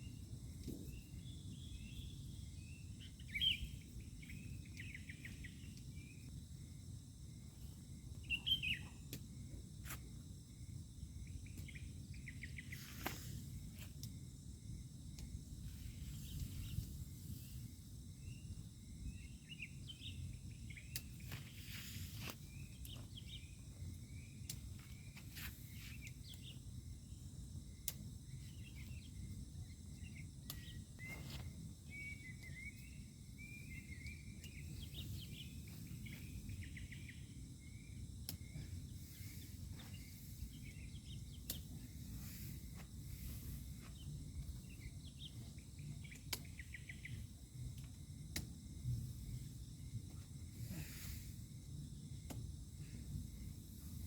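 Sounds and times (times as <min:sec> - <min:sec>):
insects trilling: 0:00.0 - 0:54.0
short chirping calls: 0:01.5 - 0:06.3, 0:08.2 - 0:09.0.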